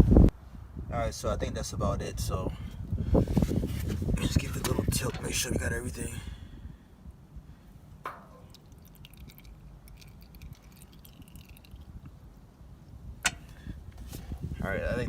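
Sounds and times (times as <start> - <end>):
oil dripping into pan: 8.1 - 12.2.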